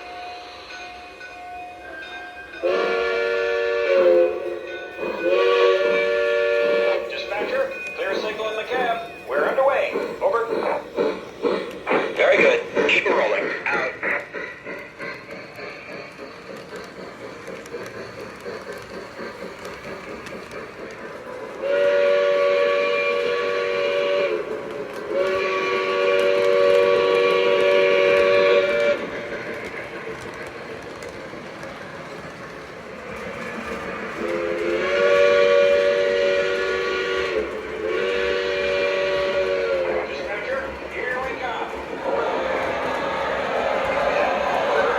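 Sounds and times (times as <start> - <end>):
model train running: 0.0 - 44.9
model train chord horn: 2.6 - 4.5, 5.2 - 7.3, 21.6 - 24.5, 25.1 - 29.0, 34.3 - 40.0.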